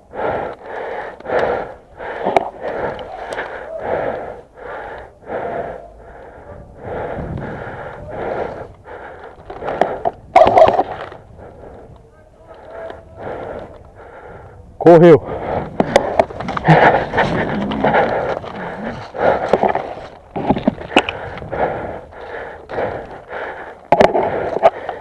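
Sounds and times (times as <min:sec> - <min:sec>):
person panting: 0:00.0 - 0:25.0
voiced gasp: 0:00.1 - 0:10.8.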